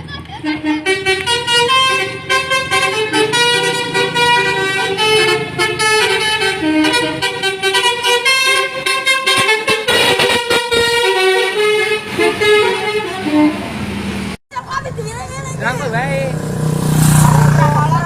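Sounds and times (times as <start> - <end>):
musical bus horn melody: 0.4 - 13.9.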